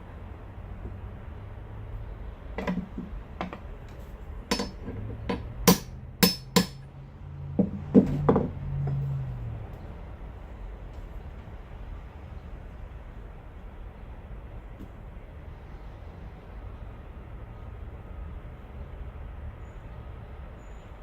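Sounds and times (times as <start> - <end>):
metallic clinks and knocks: 4.5 - 6.8.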